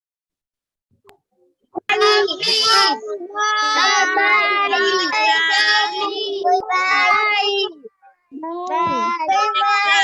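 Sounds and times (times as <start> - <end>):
child singing: 1.9 - 7.8, 8.4 - 10.0.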